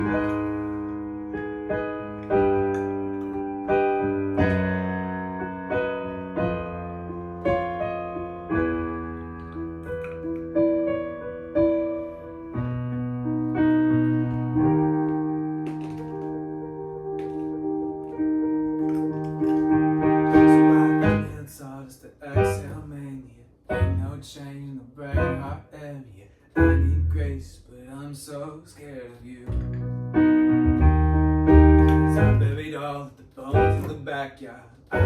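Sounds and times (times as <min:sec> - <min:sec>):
solo piano chords: 0:00.0 - 0:21.4, 0:22.4 - 0:22.9, 0:23.7 - 0:24.2, 0:25.2 - 0:25.6, 0:26.6 - 0:27.4, 0:29.5 - 0:32.6, 0:33.5 - 0:34.1.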